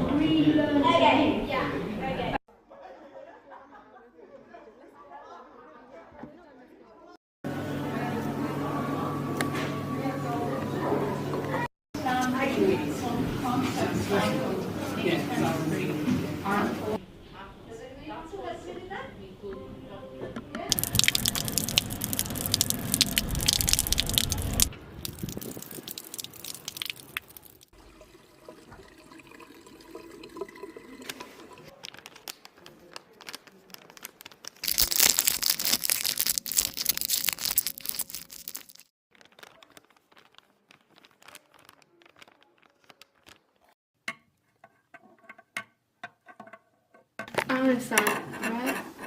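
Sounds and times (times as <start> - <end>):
loud crackling and crinkling: 20.7 - 27.7, 31.7 - 43.8.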